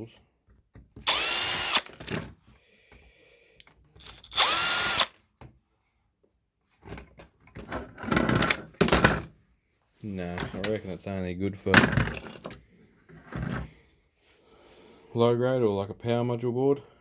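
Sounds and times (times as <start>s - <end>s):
cordless drill spinning: 1.0s - 2.3s, 4.0s - 5.2s
knocks and rattles: 11.8s - 12.6s.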